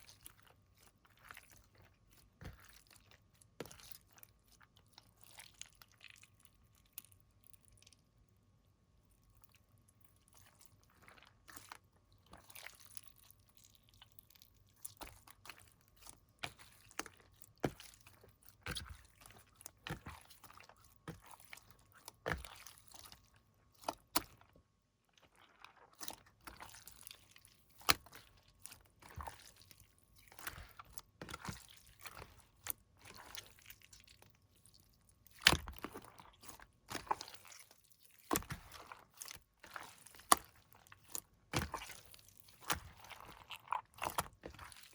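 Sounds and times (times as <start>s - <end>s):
slime squishing and popping: 35.2s - 44.9s.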